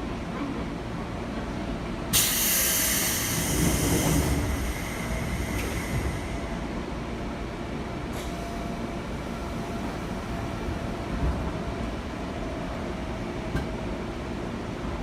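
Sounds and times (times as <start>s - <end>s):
train low rumble: 0.0s - 15.0s.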